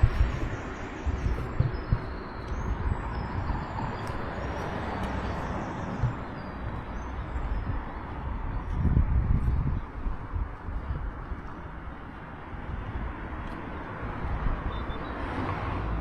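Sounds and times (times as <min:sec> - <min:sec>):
low thumps: 0:00.0 - 0:04.5, 0:05.2 - 0:07.9.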